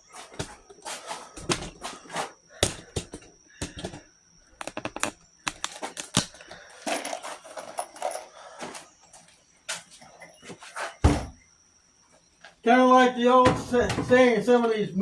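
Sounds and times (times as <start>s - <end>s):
sharp metallic clicks and taps: 4.6s - 6.3s.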